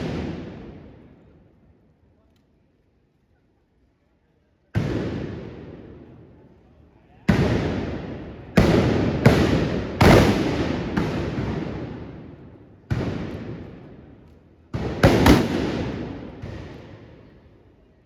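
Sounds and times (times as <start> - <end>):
blunderbuss blank shots with echo: 7.3 - 14.2, 14.8 - 17.2.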